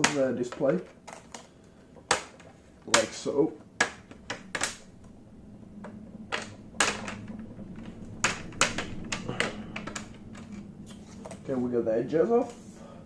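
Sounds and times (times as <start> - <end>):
plastic clips snapping loose: 3.8 - 4.9.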